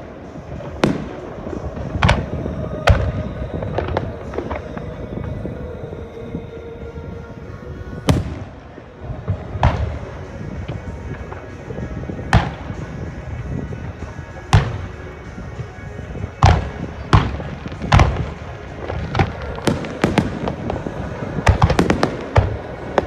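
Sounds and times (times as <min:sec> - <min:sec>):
crackling firework reports: 0:00.0 - 0:05.6, 0:07.5 - 0:23.0
music playing: 0:00.0 - 0:23.0
firework shells bursting: 0:09.4 - 0:23.0.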